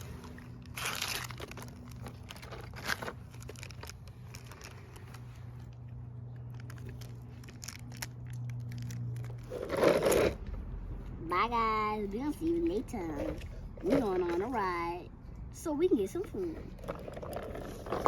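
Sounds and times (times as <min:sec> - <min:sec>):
plastic packaging crinkling: 0:00.0 - 0:10.1
steady low hum: 0:00.0 - 0:18.0.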